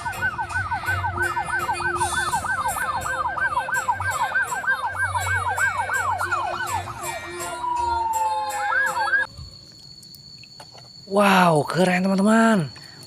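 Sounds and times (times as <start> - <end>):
electronic siren yelping: 0.0 - 9.3.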